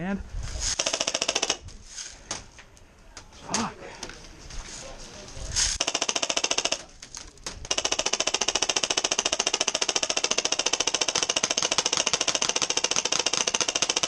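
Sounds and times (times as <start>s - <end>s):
airsoft gun firing full auto: 0.8s - 1.6s, 5.8s - 6.9s, 7.7s - 14.0s.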